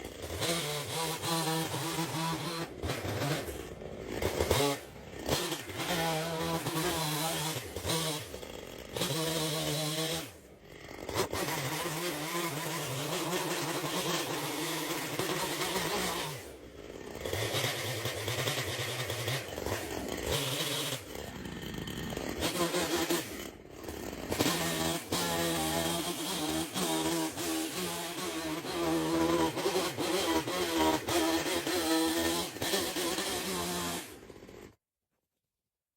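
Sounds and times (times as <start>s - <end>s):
chainsaw engine revving: 0.0s - 34.8s.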